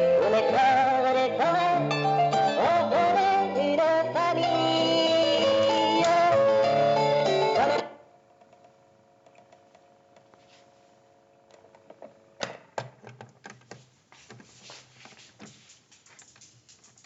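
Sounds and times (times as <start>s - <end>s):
record player hum: 0.0s - 17.0s
record player clicks and taps: 11.4s - 14.4s.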